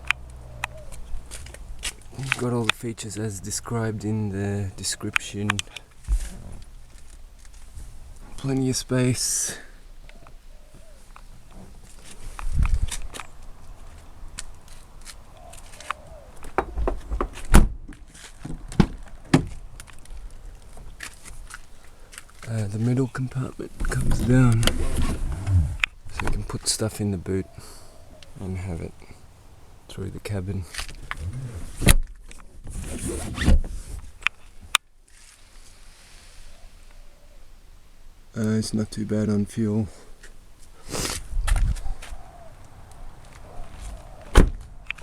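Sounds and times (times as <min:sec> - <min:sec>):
footsteps: 0:00.9 - 0:02.5
upholstery and plastic scraping: 0:06.0 - 0:07.9, 0:23.6 - 0:26.5, 0:30.8 - 0:34.2
car doors knocking and thumping: 0:16.4 - 0:19.6, 0:44.3 - 0:44.8
seat latch clicks and knocks: 0:44.3 - 0:45.0.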